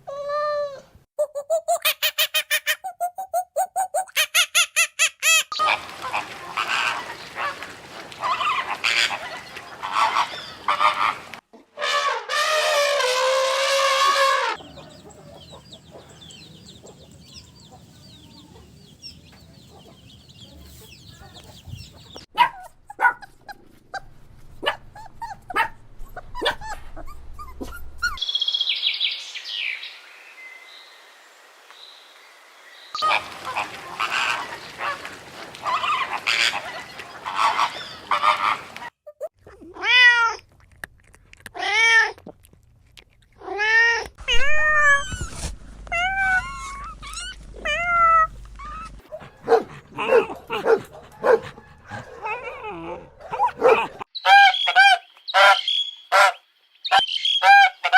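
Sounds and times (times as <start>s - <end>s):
recorded animal sounds: 5.5s - 22.3s, 32.9s - 57.9s
cat meowing: 45.9s - 49.0s.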